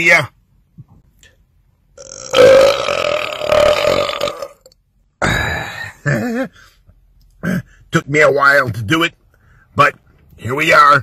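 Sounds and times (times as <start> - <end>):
man belching: 2.0 - 6.0.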